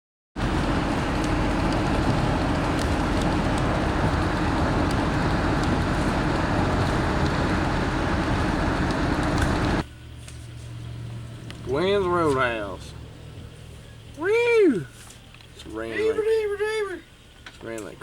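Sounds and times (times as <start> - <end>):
moving vehicle rumble and hiss: 0.4 - 18.0.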